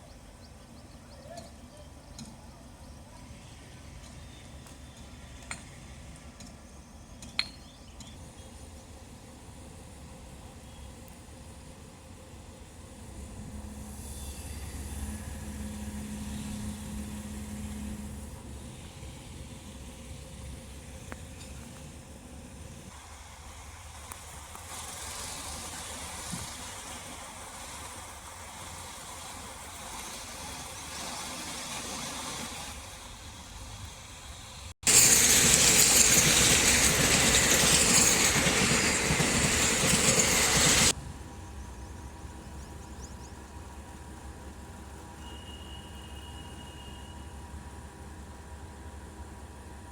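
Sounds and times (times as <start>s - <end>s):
loud rushing hiss: 25.0s - 41.0s.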